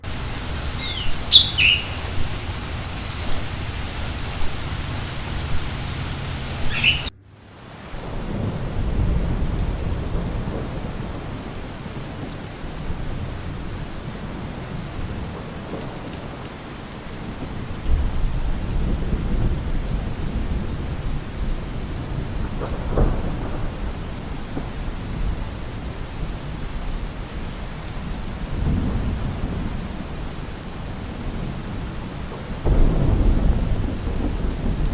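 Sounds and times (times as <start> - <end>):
rolling thunder: 0.0 - 7.1, 7.8 - 16.4, 17.2 - 34.9
steady rain: 0.0 - 34.9
short high chirps: 0.8 - 2.1.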